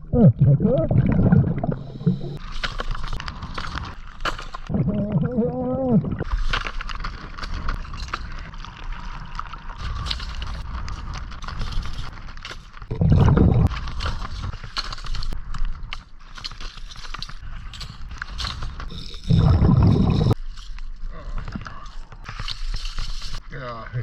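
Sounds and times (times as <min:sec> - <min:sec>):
low underwater rumble: 0:00.0 - 0:02.4, 0:12.9 - 0:13.7
regulator bubbles exhaled: 0:00.0 - 0:02.4, 0:04.7 - 0:06.3, 0:12.9 - 0:13.7, 0:19.1 - 0:20.4.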